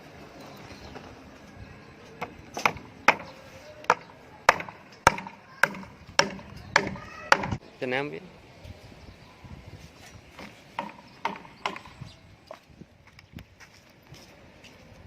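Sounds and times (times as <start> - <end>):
hammer striking nails into wood: 2.2 - 3.3, 3.9 - 7.6, 10.8 - 12.0.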